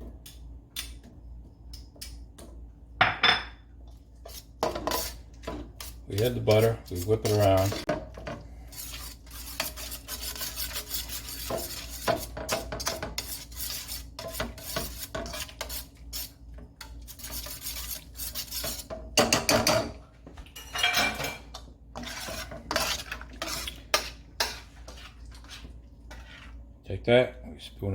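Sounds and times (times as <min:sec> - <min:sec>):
utensil scraping a pan: 0:04.2 - 0:20.0, 0:20.8 - 0:26.6.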